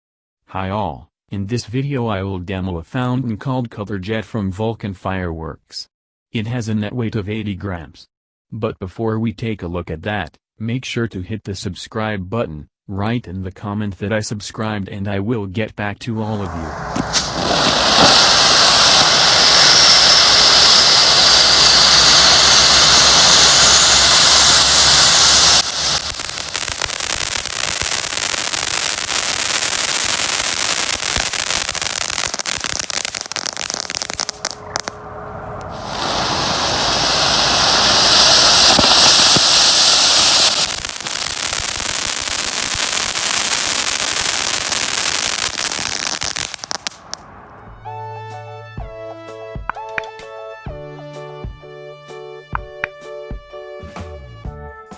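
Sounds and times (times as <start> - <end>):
firework crackling: 16.2 - 47.2
firework fountain hissing: 16.2 - 47.2.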